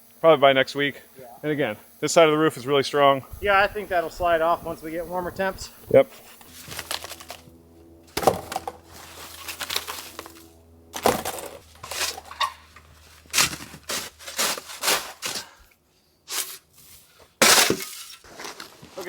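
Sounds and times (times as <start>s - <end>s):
snow crunching and scraping: 3.3s - 7.5s, 8.1s - 15.7s, 16.3s - 19.0s.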